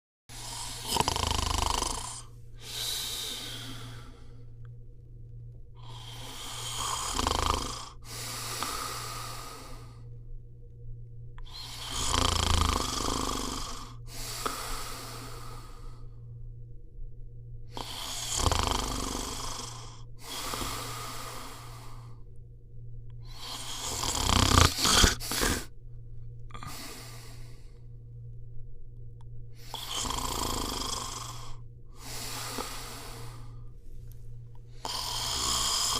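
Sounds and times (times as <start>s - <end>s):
dog snoring: 0.3s - 4.3s, 5.8s - 10.0s, 11.4s - 16.1s, 17.7s - 22.1s, 23.2s - 25.7s, 29.6s - 33.6s, 34.8s - 35.9s
steady low hum: 0.3s - 35.9s
dog snorting: 23.6s - 25.7s.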